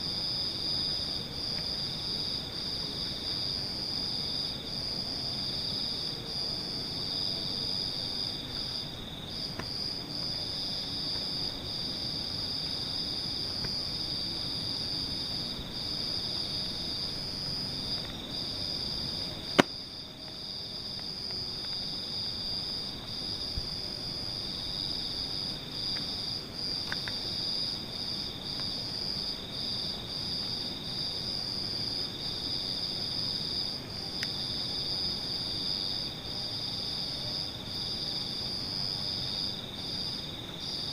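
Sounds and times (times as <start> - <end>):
insects chirring: 0.0 - 40.9
low background hiss: 0.0 - 40.9.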